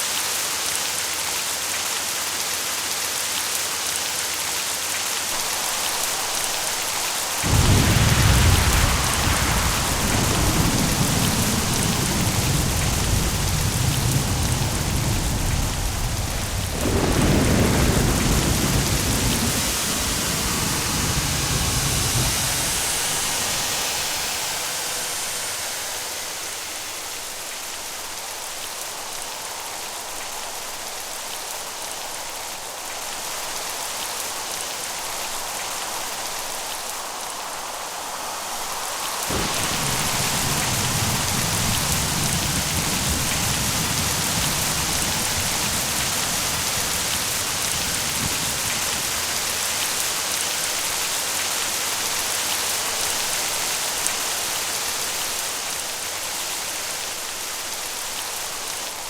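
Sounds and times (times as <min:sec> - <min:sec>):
heavy rain: 0:00.0 - 0:59.0
rolling thunder: 0:05.4 - 0:26.6, 0:39.3 - 0:51.1.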